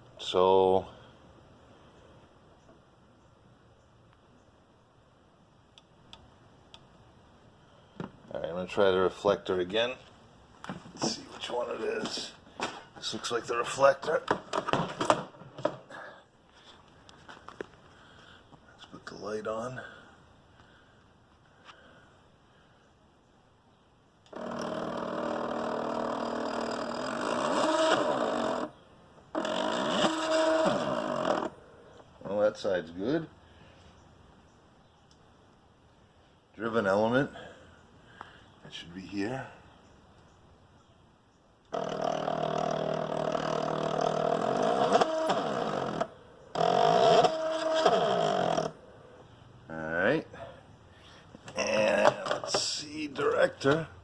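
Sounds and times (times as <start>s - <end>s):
stepper motor whine: 24.3s - 28.7s, 29.3s - 31.5s, 41.7s - 48.8s.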